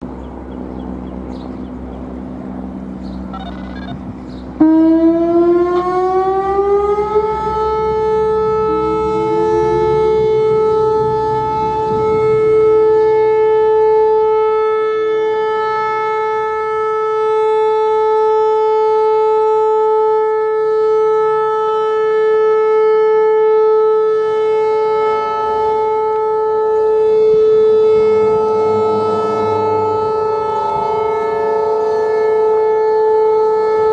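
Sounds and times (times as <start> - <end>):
low steady hum: 0.0 - 16.9
storm warning siren: 0.0 - 33.9.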